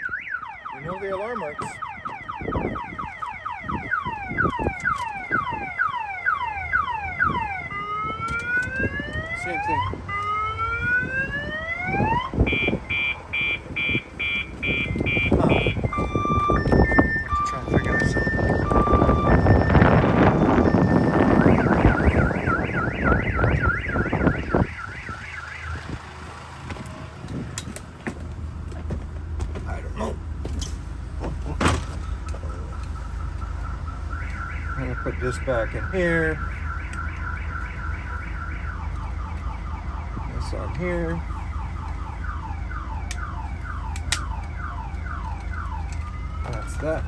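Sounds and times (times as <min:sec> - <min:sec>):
car alarm falling chirps: 0:11.9 - 0:25.8, 0:31.6 - 0:39.9.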